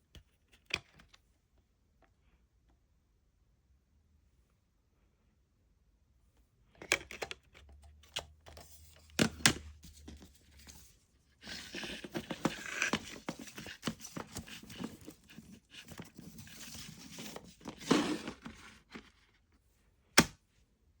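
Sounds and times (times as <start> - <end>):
crinkling and rustling: 6.8 - 19.6.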